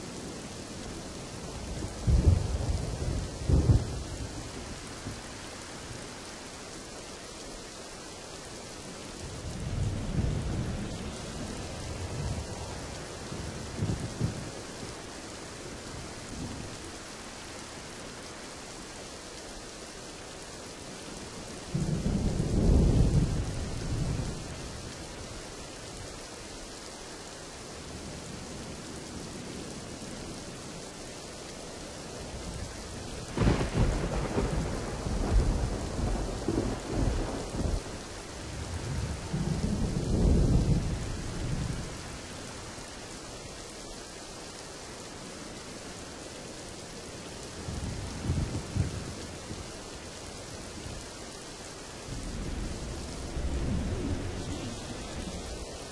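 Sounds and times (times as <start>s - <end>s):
heavy rain: 0.0s - 55.9s
thunder rumbling: 1.6s - 5.4s, 9.4s - 15.0s, 32.4s - 42.3s, 52.0s - 55.9s.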